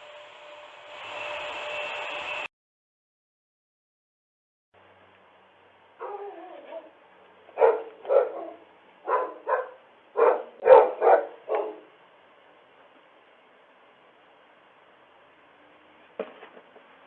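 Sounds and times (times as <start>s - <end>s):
dog barking: 6.0s - 6.9s, 7.5s - 11.9s
dog whining: 6.0s - 7.0s.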